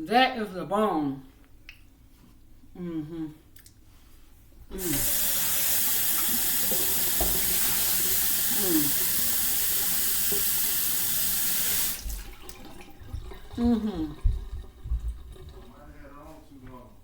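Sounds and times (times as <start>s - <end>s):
tap water running into sink: 4.7s - 16.8s.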